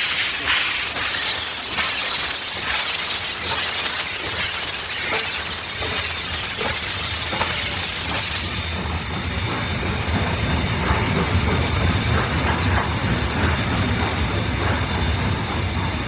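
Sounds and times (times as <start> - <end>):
mechanical knocks and clanking: 0.0 - 16.0
steam hissing: 0.0 - 16.0
steam locomotive rumbling: 0.0 - 16.0.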